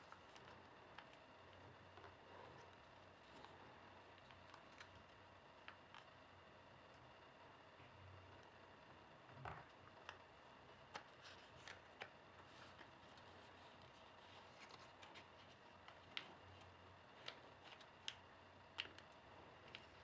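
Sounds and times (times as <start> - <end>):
low room hiss: 0.0 - 20.0
paper being folded and creased: 10.8 - 18.2.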